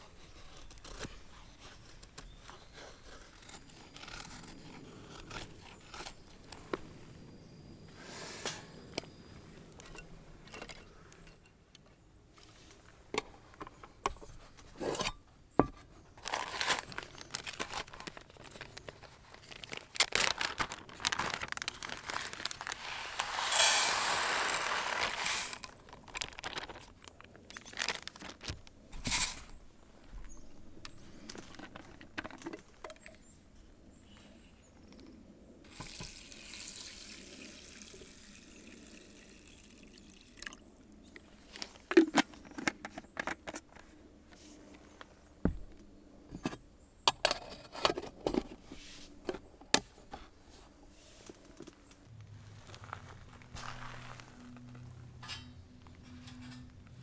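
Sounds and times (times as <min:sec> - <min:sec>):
water pouring: 0:35.7 - 0:40.6.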